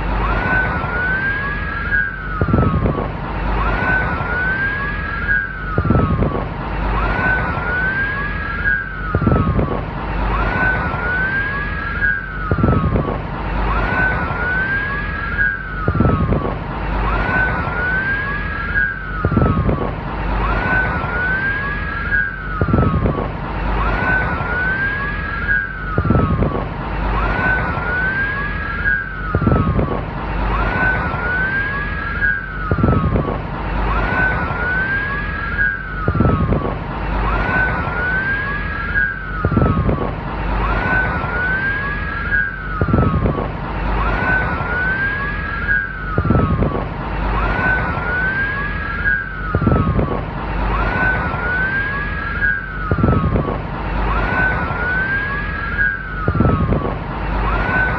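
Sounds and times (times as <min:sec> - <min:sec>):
steady low rumble: 0:00.0 - 0:57.9.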